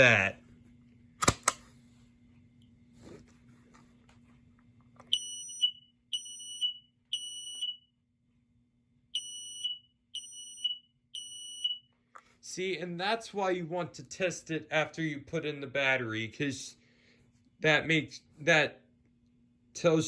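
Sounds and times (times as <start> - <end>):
smoke alarm beeps: 5.1 - 7.9, 9.2 - 11.9.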